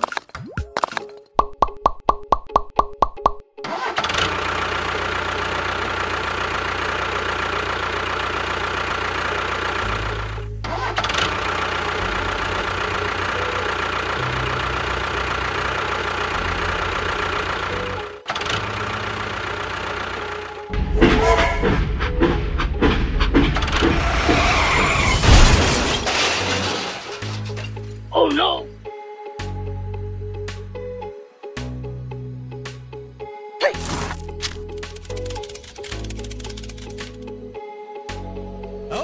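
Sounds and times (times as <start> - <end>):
engine running: 3.6 - 28.1, 33.8 - 37.4.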